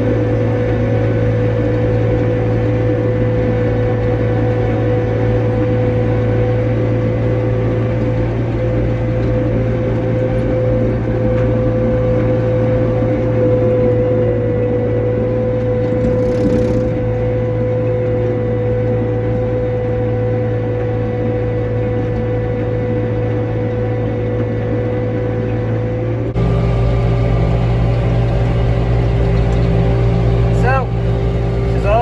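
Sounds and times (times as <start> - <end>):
tractor engine running: 14.8 - 18.5, 22.0 - 32.0.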